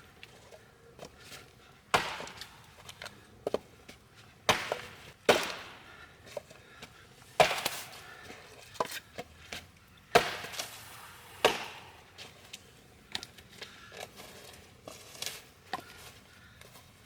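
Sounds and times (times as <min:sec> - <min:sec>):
axe striking wood: 0:01.9 - 0:02.5, 0:04.5 - 0:05.9, 0:07.4 - 0:07.9, 0:10.1 - 0:10.8, 0:11.4 - 0:12.0.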